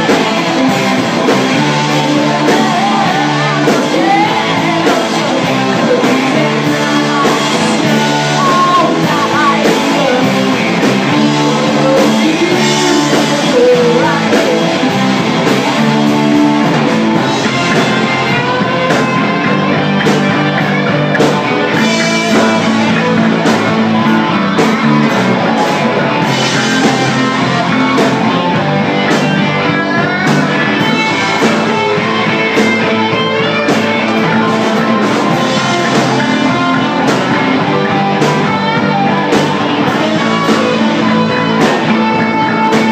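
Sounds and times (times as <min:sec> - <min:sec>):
guitar: 0:00.0 - 0:42.9
live band playing: 0:00.0 - 0:42.9
person singing: 0:00.0 - 0:42.9.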